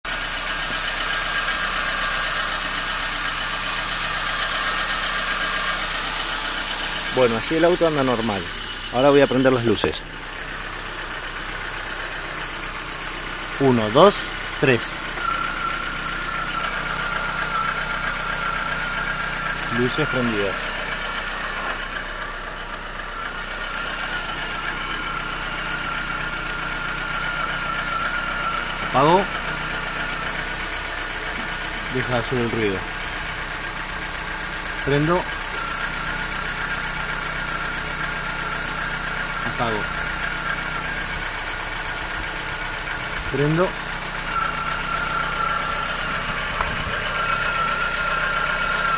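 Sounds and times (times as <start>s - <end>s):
car engine idling: 0.0s - 48.9s
high-pitched whine: 44.3s - 48.9s.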